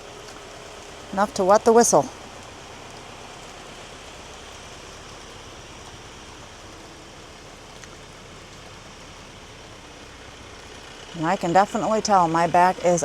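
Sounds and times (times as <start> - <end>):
light rain falling: 0.0 - 13.0
faint tick: 7.7 - 8.7.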